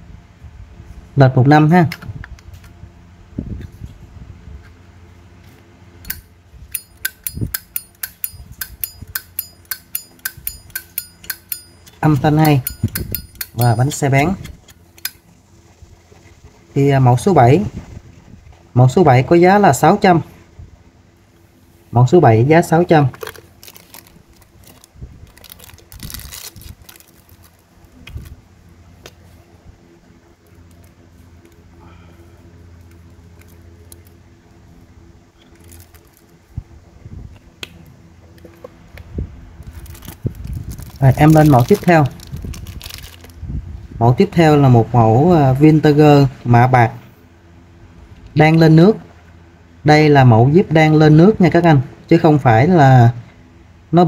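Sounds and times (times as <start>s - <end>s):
metal lighter clicks and knocks: 6.0s - 14.0s.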